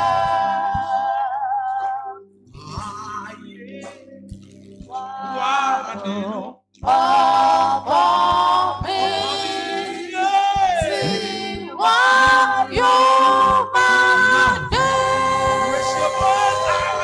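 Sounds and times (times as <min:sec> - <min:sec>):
church worship singing: 0:00.0 - 0:17.0.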